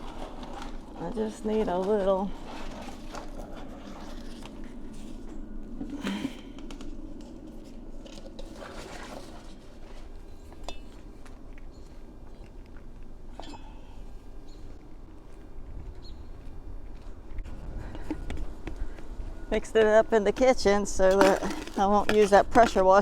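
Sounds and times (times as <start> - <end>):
mortar scraping and stirring: 0.0 - 5.2, 7.6 - 11.1, 20.2 - 23.0.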